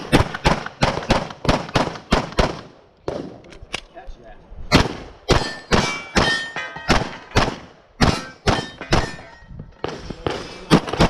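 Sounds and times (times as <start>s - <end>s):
pistol shots: 0.0s - 3.4s, 4.7s - 9.2s, 9.8s - 11.0s
steel targets ringing: 5.3s - 7.4s, 8.0s - 9.6s.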